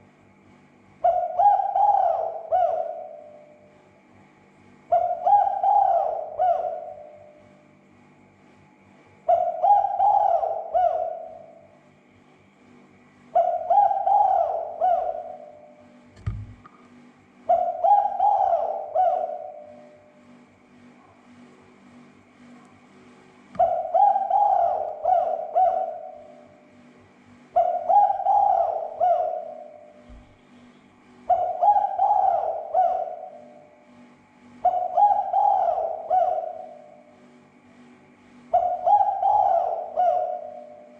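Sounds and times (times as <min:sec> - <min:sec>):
dove cooing: 0:01.0 - 0:03.7, 0:04.9 - 0:07.4, 0:09.2 - 0:11.8, 0:13.3 - 0:16.6, 0:17.4 - 0:20.2, 0:23.5 - 0:26.8, 0:27.5 - 0:30.7, 0:31.3 - 0:33.8, 0:34.6 - 0:37.2, 0:38.5 - 0:40.9.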